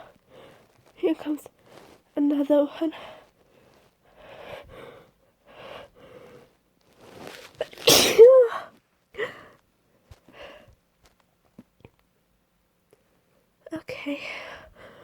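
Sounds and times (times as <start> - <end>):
woman sneezing: 7.6 - 8.7.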